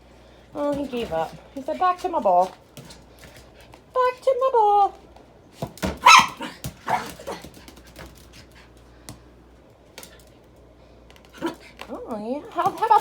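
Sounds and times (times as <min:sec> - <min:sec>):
small dog barking: 0:06.0 - 0:07.4.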